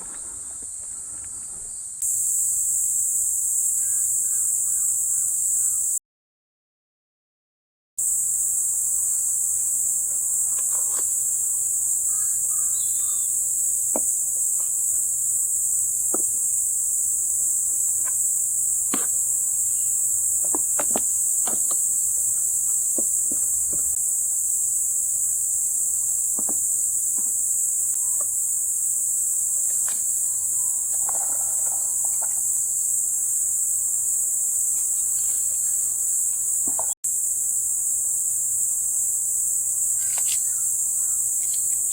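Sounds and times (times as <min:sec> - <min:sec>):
insects chirping: 0:00.0 - 0:06.0, 0:08.0 - 0:41.9.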